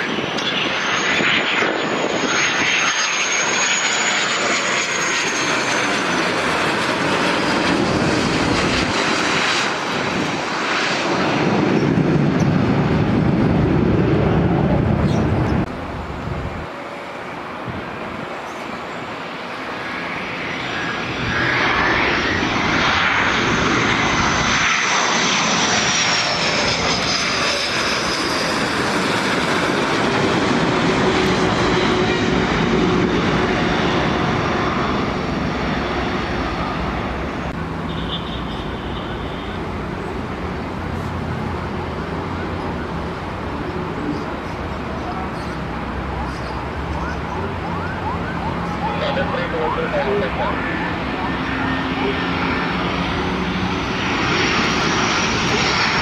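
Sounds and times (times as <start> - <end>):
heavy low jet rumble: 0.0 - 37.9
jet engine whine: 0.0 - 56.0.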